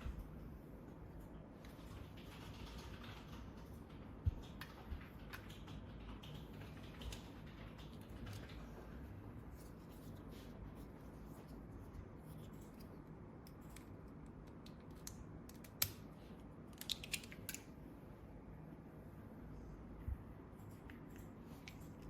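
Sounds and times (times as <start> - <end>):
small plastic parts clicking: 16.7 - 17.7.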